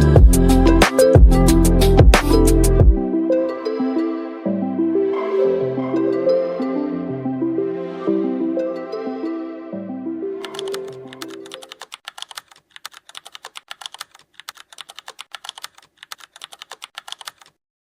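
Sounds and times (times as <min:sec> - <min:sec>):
soft background music: 0:00.0 - 0:11.8
computer keyboard typing: 0:10.4 - 0:17.6.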